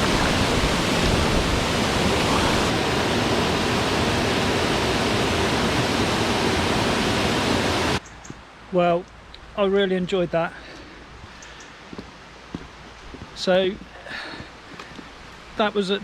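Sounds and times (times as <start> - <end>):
waterfall rushing: 0.0 - 8.0.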